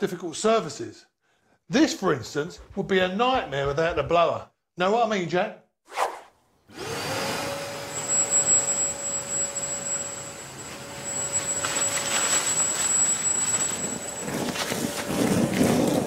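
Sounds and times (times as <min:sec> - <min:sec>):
vacuum motor whine: 0:06.7 - 0:16.0.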